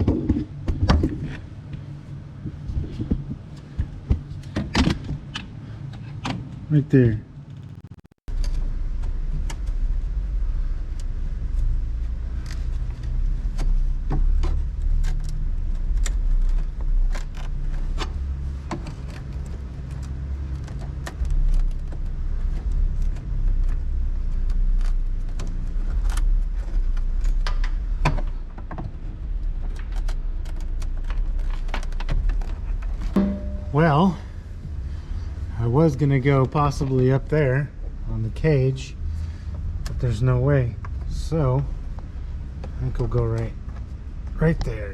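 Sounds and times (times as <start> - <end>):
steady low rumble: 0.0 - 44.9
clicks and rattles of parts handled: 12.4 - 33.2.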